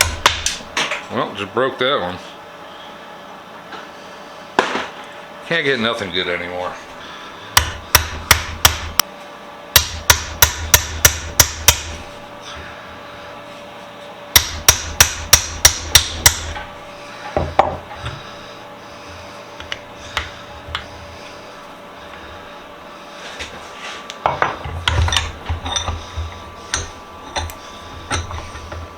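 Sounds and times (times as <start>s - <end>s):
hammer striking metal punch: 7.6s - 9.0s, 9.8s - 12.0s, 14.3s - 16.7s.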